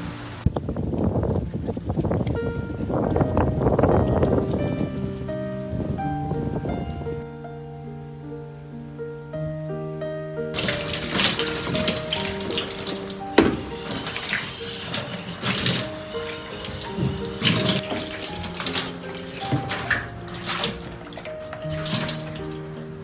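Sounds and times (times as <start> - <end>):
soft background music: 0.0 - 23.0
water running from a tap: 10.6 - 23.0.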